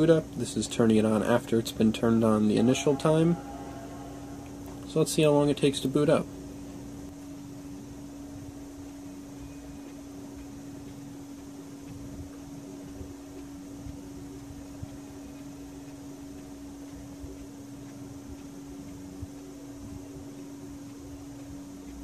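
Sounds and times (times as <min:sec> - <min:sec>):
low steady hum: 0:00.0 - 0:22.0
faint ticks: 0:08.4 - 0:22.0.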